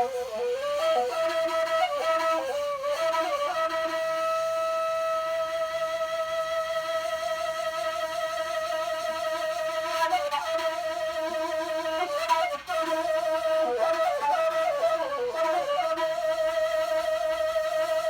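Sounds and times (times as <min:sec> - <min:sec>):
shepherd's flute solo: 0:00.0 - 0:18.0.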